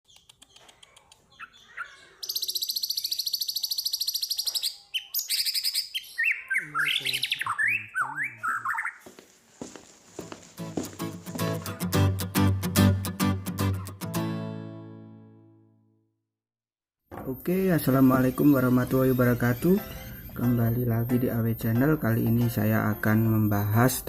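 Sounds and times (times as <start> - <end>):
songbird trilling: 1.3 - 9.0.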